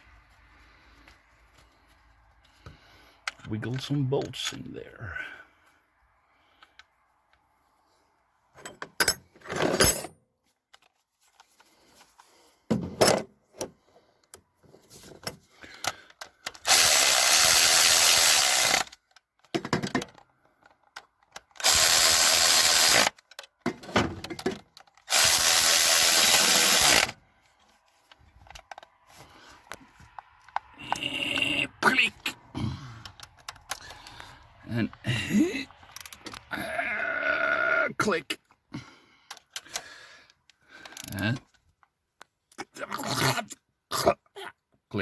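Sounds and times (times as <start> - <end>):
tools clinking and knocking: 8.5 - 10.9, 12.7 - 14.4, 18.8 - 21.7
power drill running bolts: 16.5 - 19.0, 21.5 - 23.3, 24.4 - 27.2.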